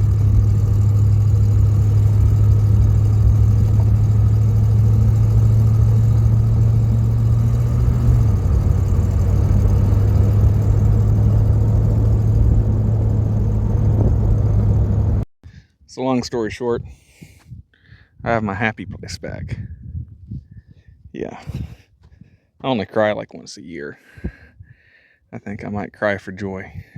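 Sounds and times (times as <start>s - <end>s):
car engine cruising: 0.0s - 15.3s.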